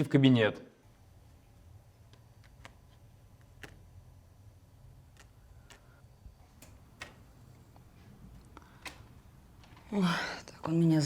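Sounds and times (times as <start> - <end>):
low room hum: 0.0 - 11.0.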